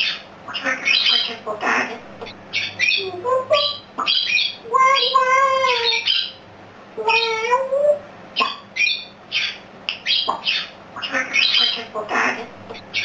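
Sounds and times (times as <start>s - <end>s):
parrot squawking: 0.0s - 6.4s, 7.0s - 13.0s.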